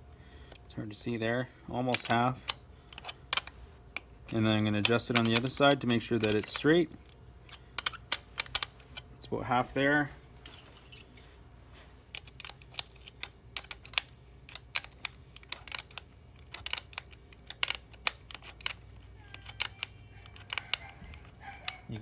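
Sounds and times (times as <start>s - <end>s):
tools clicking and tapping: 1.9s - 6.7s, 7.4s - 9.1s, 10.4s - 11.2s, 12.0s - 22.0s.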